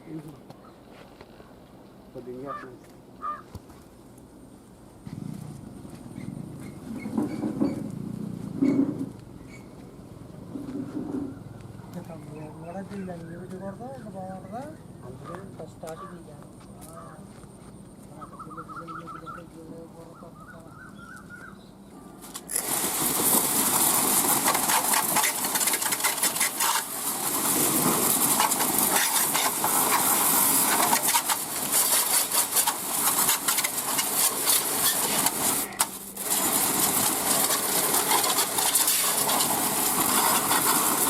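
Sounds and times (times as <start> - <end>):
pressure washer spraying water: 22.4 - 41.0.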